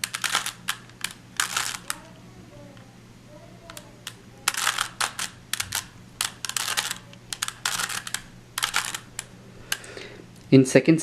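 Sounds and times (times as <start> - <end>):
puzzle cube clicking and rattling: 0.0 - 2.0, 3.6 - 9.9.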